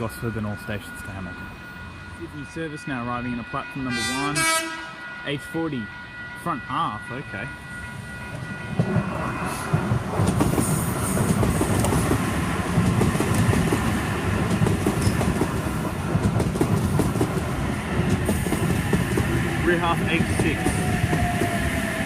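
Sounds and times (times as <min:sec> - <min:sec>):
train cars rumbling past: 0:00.0 - 0:22.0
wheels clacking over rail joints: 0:09.7 - 0:21.6.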